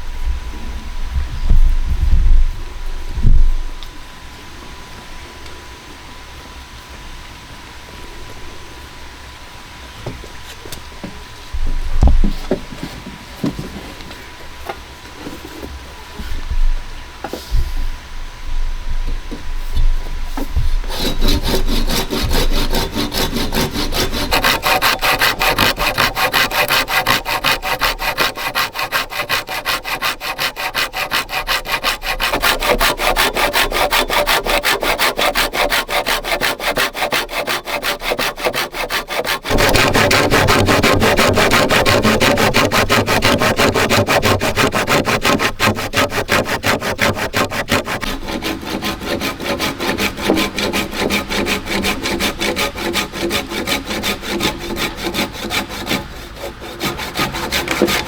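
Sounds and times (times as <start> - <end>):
saw cutting bamboo: 20.3 - 58.0.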